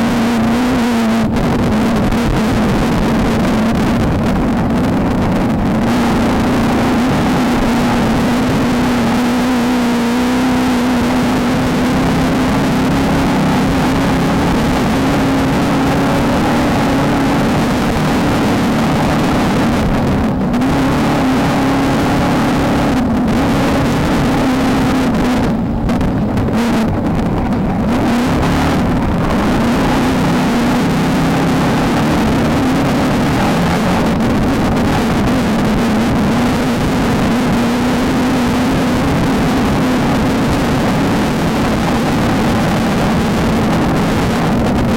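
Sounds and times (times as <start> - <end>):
race car engine running hard: 0.0 - 44.9.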